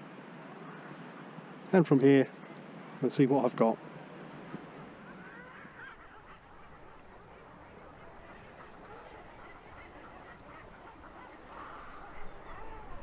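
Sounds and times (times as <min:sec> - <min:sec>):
wind and sea hiss: 0:00.0 - 0:13.0
seabirds calling: 0:03.9 - 0:13.0.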